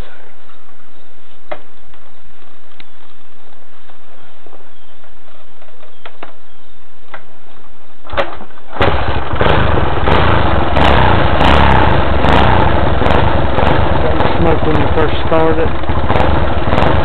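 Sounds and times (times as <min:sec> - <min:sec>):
motorcycle engine starting and running: 0:08.0 - 0:17.0.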